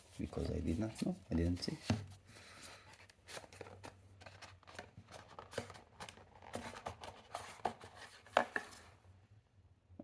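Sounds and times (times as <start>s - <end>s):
packaging clicks and rustles: 2.6s - 8.9s.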